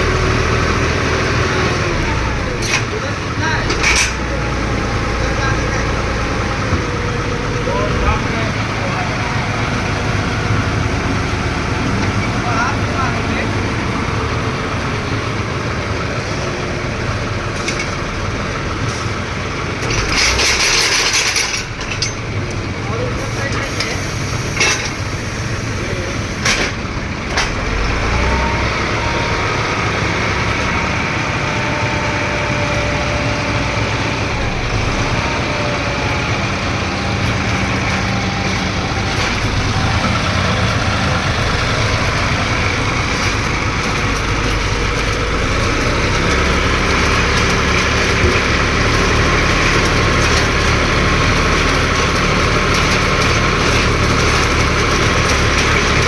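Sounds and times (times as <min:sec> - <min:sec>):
drilling rig heavy hum: 0:00.0 - 0:56.0.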